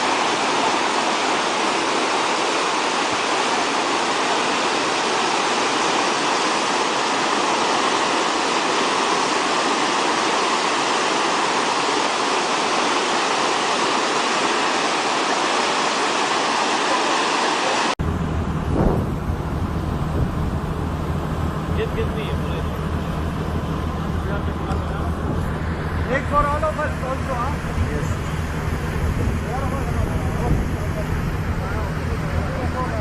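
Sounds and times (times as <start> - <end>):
floodwater rushing: 0.0 - 33.0
low rumble: 18.0 - 33.0.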